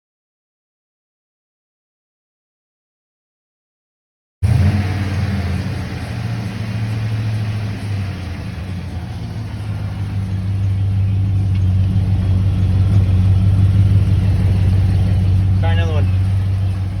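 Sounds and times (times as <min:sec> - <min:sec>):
truck engine running: 0:04.4 - 0:17.0.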